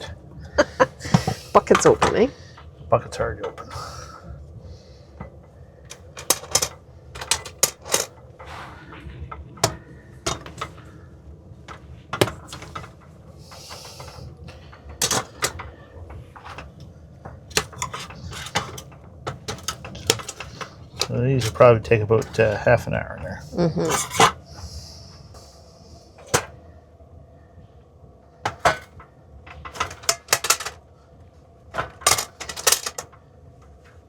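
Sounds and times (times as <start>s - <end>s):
pot and utensils clattering: 0.0s - 4.2s, 5.2s - 8.5s, 9.3s - 10.9s, 11.6s - 24.7s, 26.2s - 26.6s, 28.5s - 30.8s, 31.8s - 33.2s.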